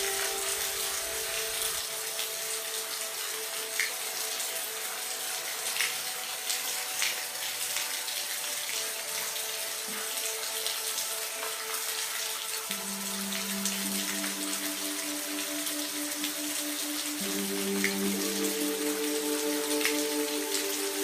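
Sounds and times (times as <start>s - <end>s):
steady rain falling: 0.0s - 21.0s
faint steady tones: 12.7s - 21.0s.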